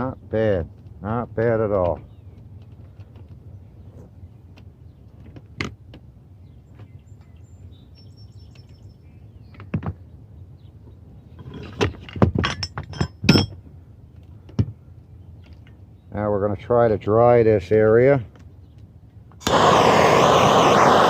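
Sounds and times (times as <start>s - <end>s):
metal tools clinking and knocking: 11.4s - 13.6s.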